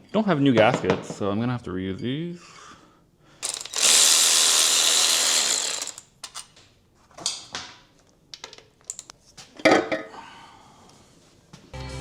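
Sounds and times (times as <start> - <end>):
handheld power tool winding down: 3.4 - 6.5
metal clinks of tools: 3.4 - 6.5, 8.8 - 9.1
ratchet clicks: 3.4 - 6.5, 8.8 - 9.1.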